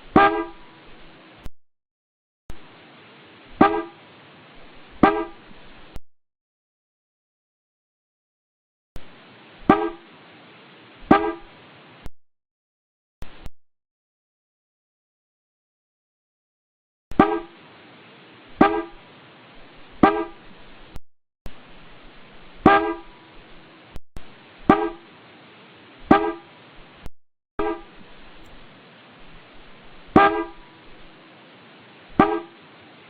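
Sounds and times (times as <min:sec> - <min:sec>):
car horn toots: 0:00.1 - 0:00.6, 0:03.6 - 0:04.0, 0:05.0 - 0:05.4, 0:09.7 - 0:10.0, 0:11.1 - 0:11.5, 0:17.1 - 0:17.5, 0:18.6 - 0:19.0, 0:20.0 - 0:20.4, 0:22.6 - 0:23.1, 0:24.7 - 0:25.0, 0:26.1 - 0:26.5, 0:27.6 - 0:28.0, 0:30.2 - 0:30.6, 0:32.2 - 0:32.5.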